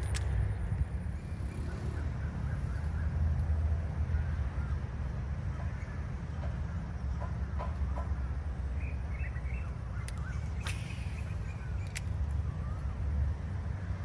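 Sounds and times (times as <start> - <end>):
faint small-bird chirps: 8.8 - 12.9.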